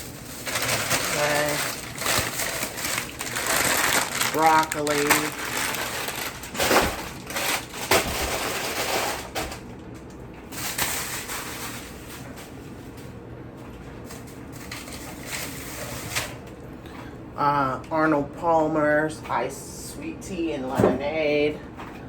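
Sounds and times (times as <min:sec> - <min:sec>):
plastic packaging rustling: 0:00.0 - 0:13.1, 0:14.1 - 0:16.4.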